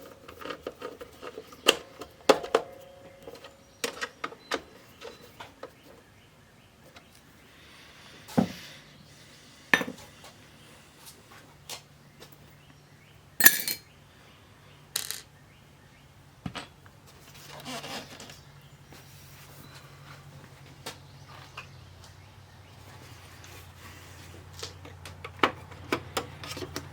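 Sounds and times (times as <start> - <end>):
metal tools clinking on workbench: 13.4 - 13.8.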